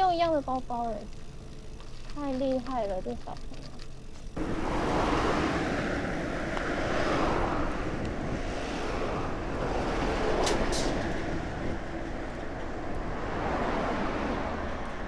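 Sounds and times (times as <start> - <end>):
road and traffic noise: 0.0 - 15.0
wind on microphone: 4.4 - 15.0.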